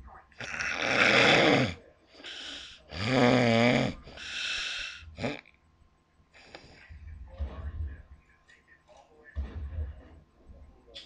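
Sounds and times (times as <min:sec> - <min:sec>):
woman snoring: 0:00.4 - 0:01.8, 0:03.0 - 0:05.4
soft breath: 0:06.3 - 0:07.2.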